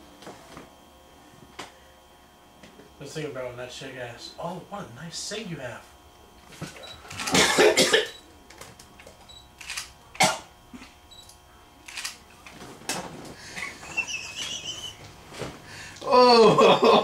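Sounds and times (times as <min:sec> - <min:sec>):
man coughing: 0:07.2 - 0:08.2, 0:10.2 - 0:10.9.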